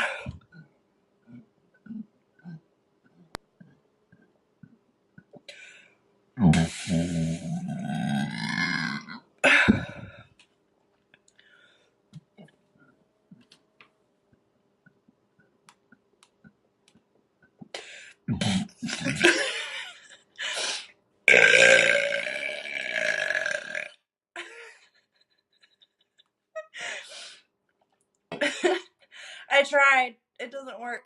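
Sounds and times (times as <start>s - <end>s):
woman burping: 7.3s - 10.3s, 21.3s - 24.0s.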